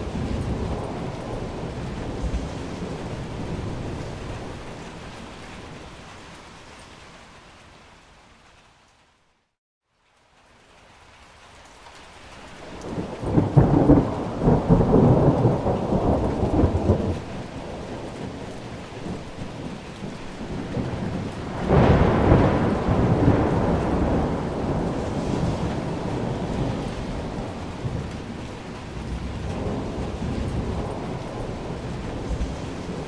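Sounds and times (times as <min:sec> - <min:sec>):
thunderclap: 0:00.0 - 0:05.4, 0:12.8 - 0:33.0
thunder rumbling: 0:00.0 - 0:06.1, 0:12.6 - 0:33.0
rain hiss: 0:00.0 - 0:33.0.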